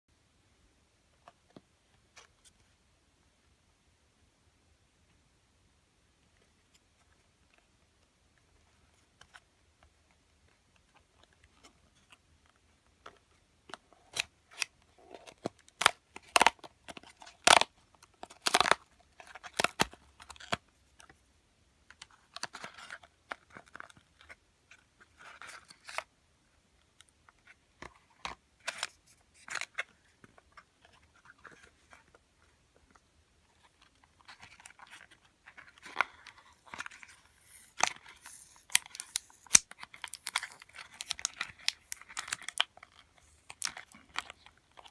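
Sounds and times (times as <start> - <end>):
packaging tearing and rustling: 34.4 - 44.9
plastic packaging clicks and snaps: 36.7 - 44.9.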